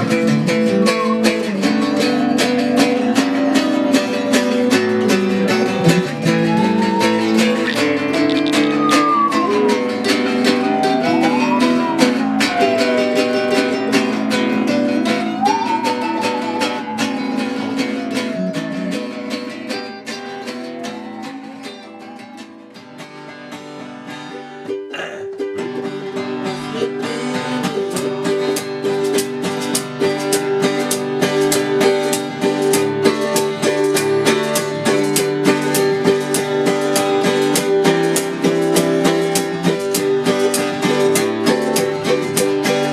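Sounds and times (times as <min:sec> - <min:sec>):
acoustic guitar strumming: 0:00.0 - 0:42.9
sliding guitar melody: 0:00.0 - 0:42.9.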